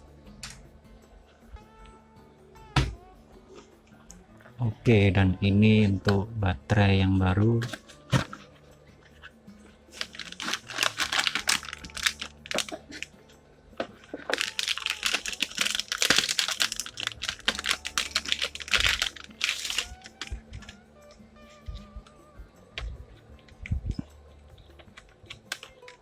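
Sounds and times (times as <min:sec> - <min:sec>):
plastic packaging crinkling: 0:09.9 - 0:13.1, 0:14.1 - 0:20.8, 0:25.3 - 0:26.0
rapid small clicks: 0:22.8 - 0:26.0.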